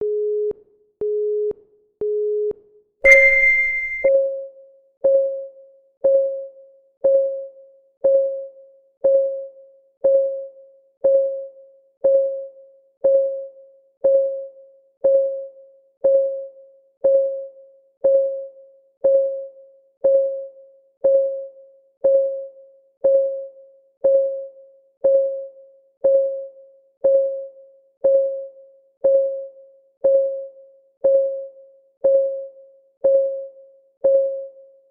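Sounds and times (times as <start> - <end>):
short electronic beeps: 3.1 - 4.1.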